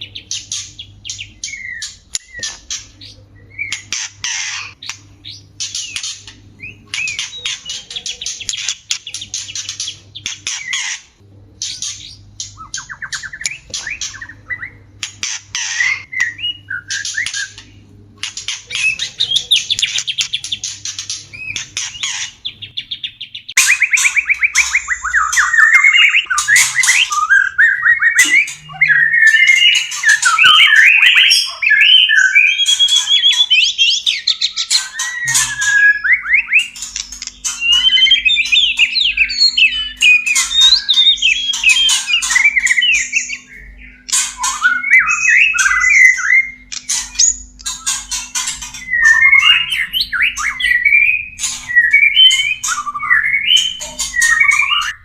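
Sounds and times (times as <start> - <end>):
bird song of trills and whistles: 0.0 - 55.0
bird harsh chattering bursts: 34.8 - 42.5.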